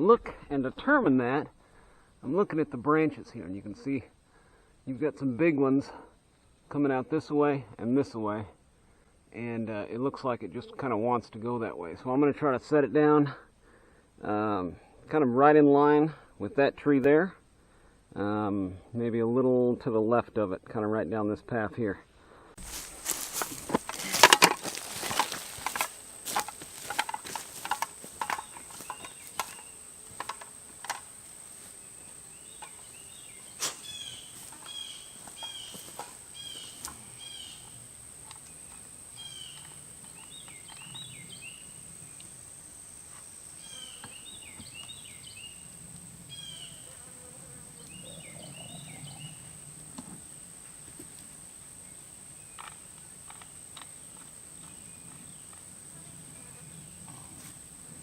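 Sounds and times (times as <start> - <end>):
high-pitched insect drone: 22.6 - 58.0
bird chirping: 22.7 - 30.0, 31.8 - 41.9, 43.6 - 46.9, 47.8 - 49.6.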